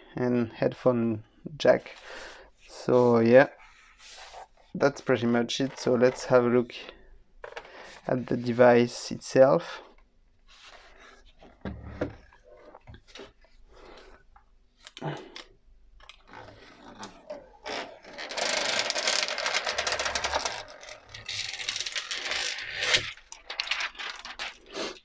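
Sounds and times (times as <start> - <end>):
crinkly packaging rustling: 16.0 - 25.0.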